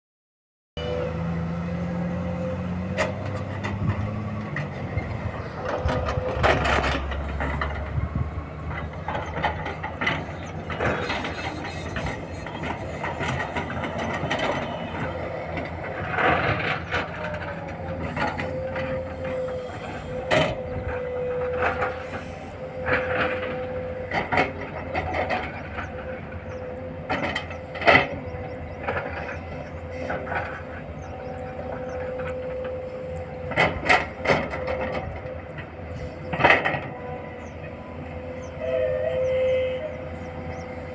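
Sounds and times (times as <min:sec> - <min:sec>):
excavator engine whining: 0:00.8 - 0:40.9
metallic clanks and knocks: 0:02.8 - 0:19.5.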